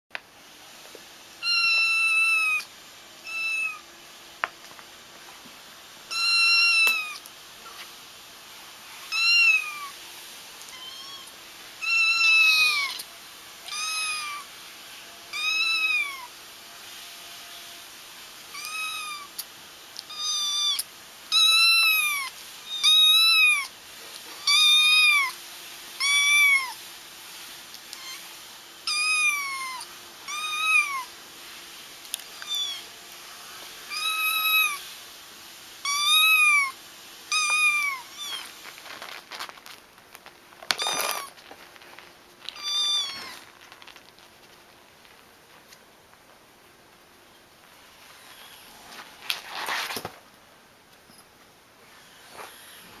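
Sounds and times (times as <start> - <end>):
kittens meowing: 1.4 - 2.7, 3.3 - 3.8, 6.1 - 7.2, 9.1 - 10.0, 10.6 - 14.5, 15.3 - 16.3, 18.5 - 19.4, 20.1 - 23.7, 26.0 - 26.8, 28.9 - 31.1, 32.3 - 32.9, 33.9 - 34.8, 35.8 - 38.6, 42.4 - 43.5.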